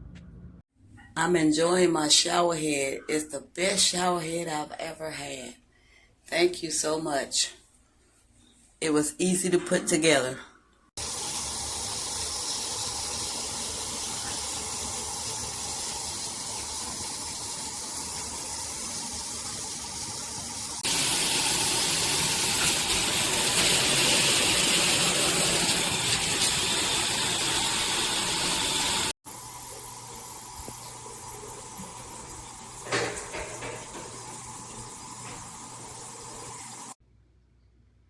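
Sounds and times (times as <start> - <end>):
shower head spraying water: 11.0 - 37.0.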